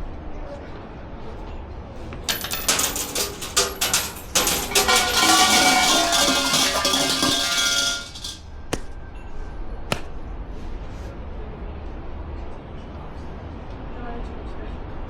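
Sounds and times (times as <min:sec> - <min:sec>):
metallic rattling and clattering: 0:02.3 - 0:08.4.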